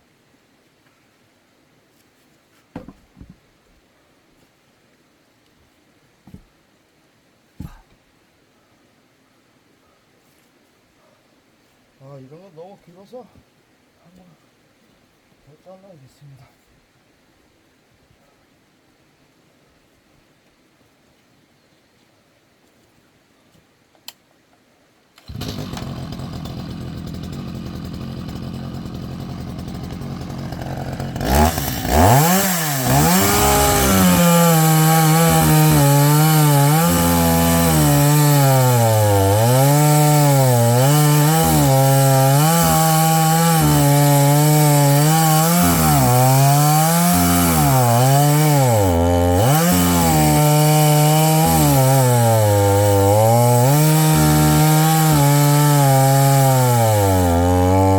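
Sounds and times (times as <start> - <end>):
chainsaw cutting a log: 25.2 - 57.9.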